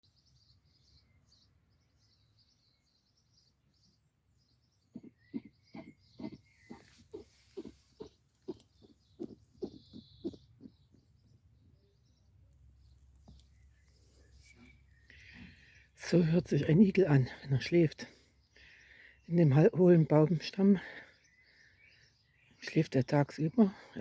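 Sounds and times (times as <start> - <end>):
faint high bird chirps: 0.0 - 16.8
hedgehog snoring softly: 5.4 - 10.4.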